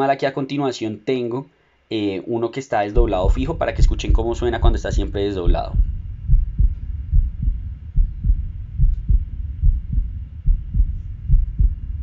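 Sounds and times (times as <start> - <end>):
heartbeat thuds: 3.0 - 12.0.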